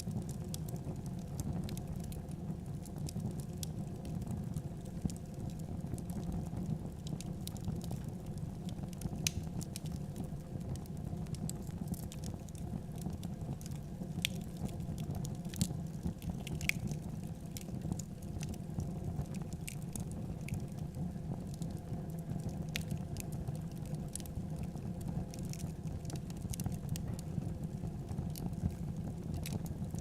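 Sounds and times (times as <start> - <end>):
wood fire crackling: 0.1 - 30.0.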